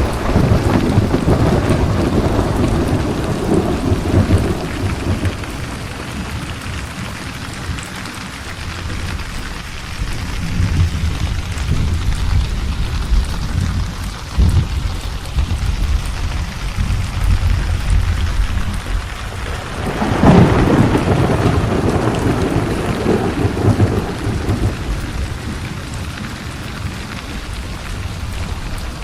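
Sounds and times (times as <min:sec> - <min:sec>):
sharp thunderclap: 0:00.0 - 0:06.5, 0:09.9 - 0:26.3
steady rain: 0:00.0 - 0:29.0
thunder rumbling: 0:00.0 - 0:29.0.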